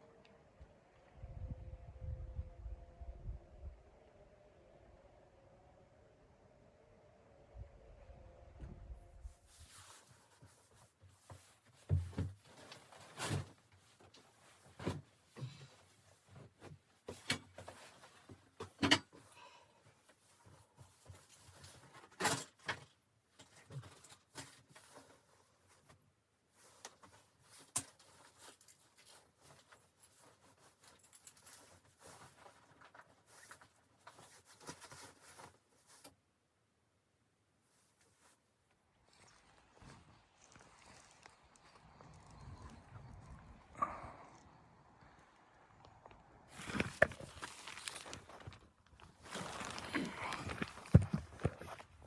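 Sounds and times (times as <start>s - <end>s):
soft rustling: 9.2s - 36.3s, 37.6s - 39.8s, 46.5s - 52.0s.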